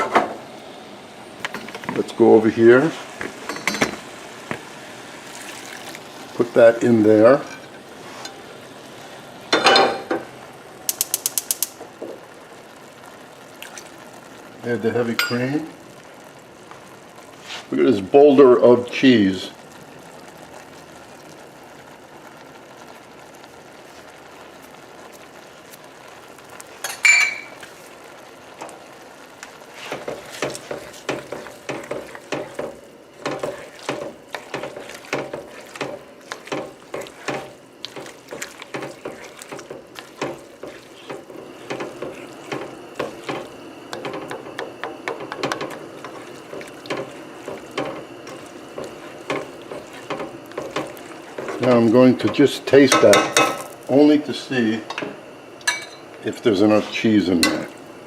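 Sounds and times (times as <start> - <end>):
sauce simmering in a pan: 0.3 - 58.0
metal clink on a pan: 3.5 - 3.9, 9.5 - 10.2, 15.2 - 15.4, 26.8 - 27.6, 52.3 - 53.7, 54.9 - 56.0, 57.4 - 57.7
utensil scraping a pan: 7.4 - 8.4, 29.7 - 53.7.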